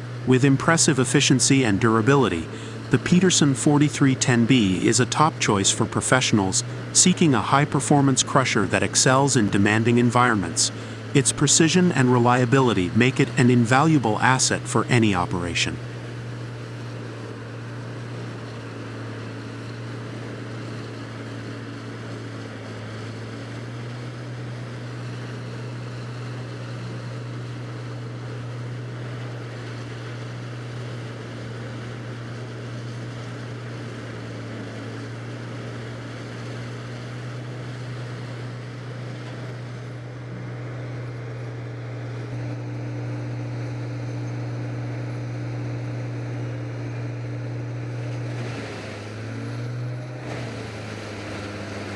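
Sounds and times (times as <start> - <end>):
diesel engine droning: 0.0 - 51.9.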